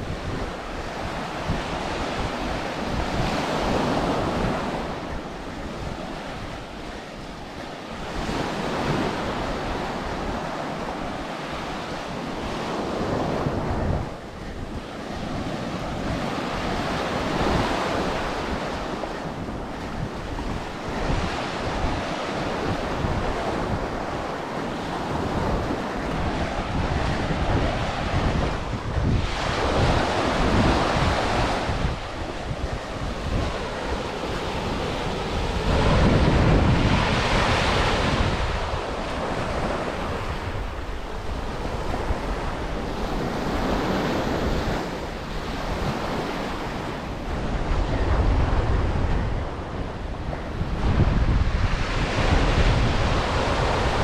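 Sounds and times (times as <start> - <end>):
ocean surf washing onto beach: 0.0 - 54.0
wind buffeting microphone: 0.0 - 54.0.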